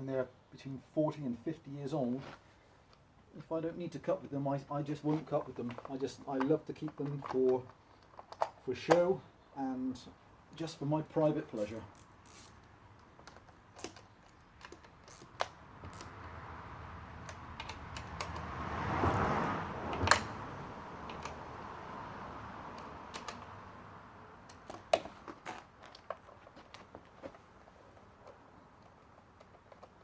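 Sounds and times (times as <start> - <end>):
light clicks and taps of handling: 24.4 - 30.0.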